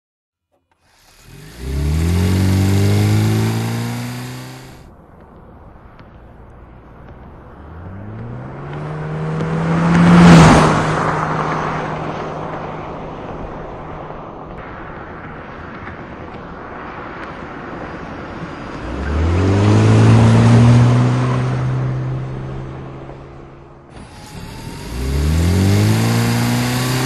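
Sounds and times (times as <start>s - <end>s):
car motor whine accelerating: 0.9s - 4.9s, 18.8s - 27.0s.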